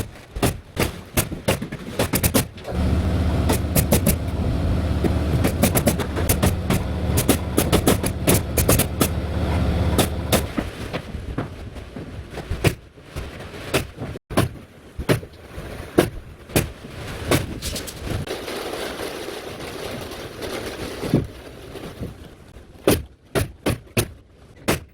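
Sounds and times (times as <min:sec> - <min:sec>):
sharp knocks and clicks: 0:02.0 - 0:10.6
steady low hum: 0:02.7 - 0:10.6.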